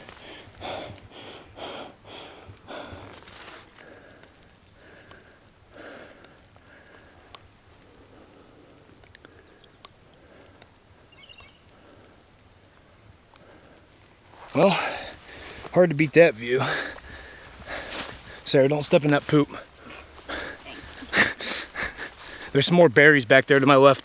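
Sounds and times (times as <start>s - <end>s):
faint rustles: 2.4s - 5.1s, 13.4s - 22.7s
footsteps through grass: 14.3s - 24.0s.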